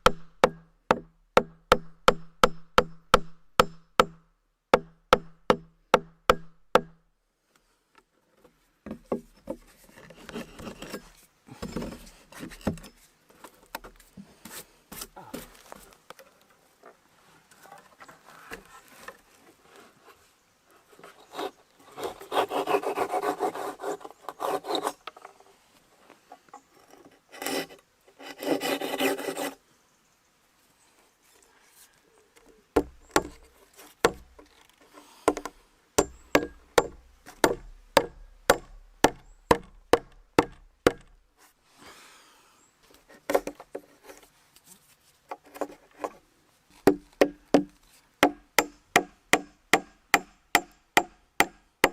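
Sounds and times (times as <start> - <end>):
sharp knocks on wood: 0.0 - 4.2, 4.8 - 7.0, 32.8 - 33.4, 34.0 - 34.3, 35.3 - 41.1, 46.8 - 51.9
rasping scraping on wood: 21.3 - 25.0, 27.4 - 29.6.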